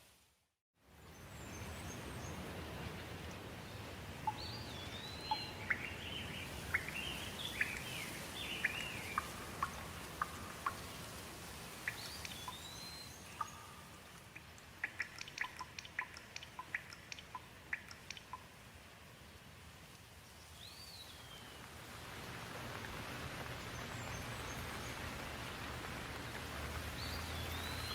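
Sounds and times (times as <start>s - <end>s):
steady rain: 0.0s - 27.9s
birds chirping and whistling: 4.3s - 11.0s, 11.8s - 13.8s, 27.0s - 27.9s.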